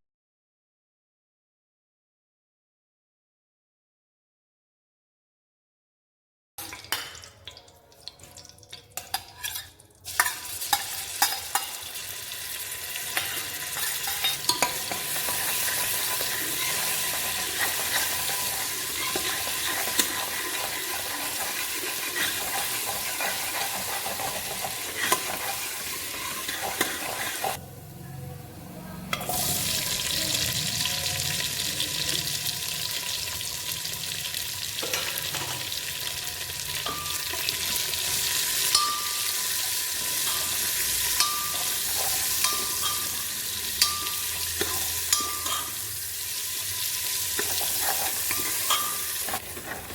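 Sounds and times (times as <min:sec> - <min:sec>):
food sizzling in a pan: 0:06.7 - 0:27.6, 0:29.2 - 0:49.9
spoon scraping a pan: 0:08.1 - 0:27.6, 0:36.6 - 0:49.9.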